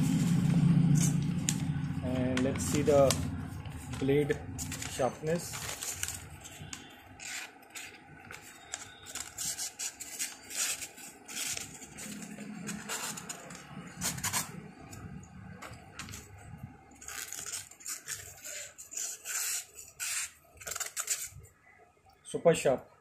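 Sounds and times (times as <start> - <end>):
paper rustling: 0.0 - 21.5
knife slicing paper: 4.6 - 14.6, 17.0 - 21.4.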